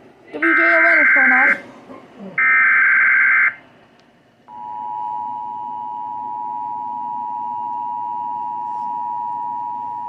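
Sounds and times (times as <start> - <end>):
two-tone alert alarm: 0.4 - 1.6, 2.4 - 3.6, 4.5 - 10.0.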